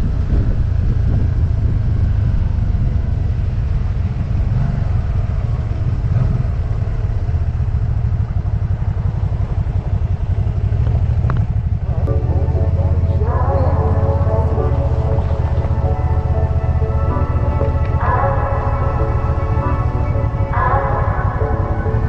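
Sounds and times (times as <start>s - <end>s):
motorcycle engine rumble: 0.0s - 22.0s
wind: 0.0s - 22.0s.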